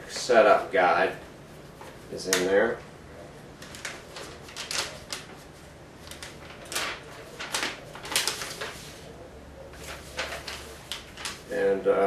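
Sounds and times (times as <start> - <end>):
packaging and paper crinkling: 3.6 - 9.1, 9.7 - 11.7.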